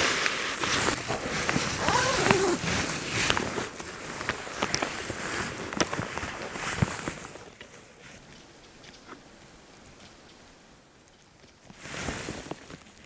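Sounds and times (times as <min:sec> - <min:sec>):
rustling: 0:00.0 - 0:09.2.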